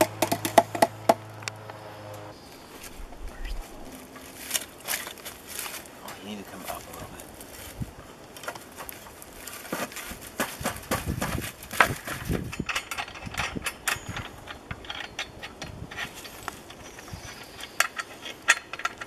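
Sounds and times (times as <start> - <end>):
clicks and knocks on wire fence: 0.0 - 1.2, 8.4 - 19.0.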